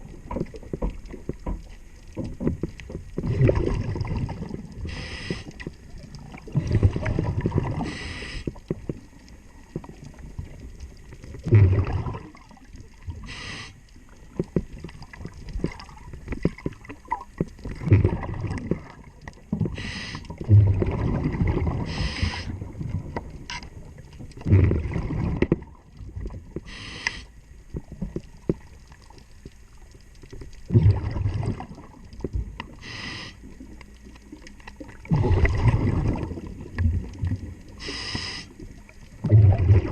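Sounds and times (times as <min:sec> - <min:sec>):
exhaust bubbles rushing: 0:03.2 - 0:04.8, 0:06.4 - 0:07.8, 0:11.4 - 0:12.4, 0:17.8 - 0:19.0, 0:20.4 - 0:22.0, 0:24.4 - 0:25.5, 0:30.7 - 0:32.0, 0:35.0 - 0:37.6, 0:39.2 - 0:39.9
regulator hiss on inhalation: 0:04.8 - 0:05.6, 0:07.8 - 0:08.6, 0:13.2 - 0:13.8, 0:19.7 - 0:20.3, 0:21.9 - 0:22.5, 0:26.6 - 0:27.4, 0:32.7 - 0:33.4, 0:37.8 - 0:38.6
faint clicks: 0:26.5 - 0:30.7.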